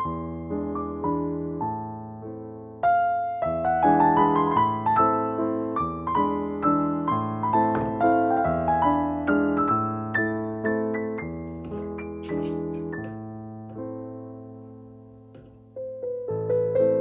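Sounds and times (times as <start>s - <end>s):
soft solo piano music: 0.0s - 17.0s.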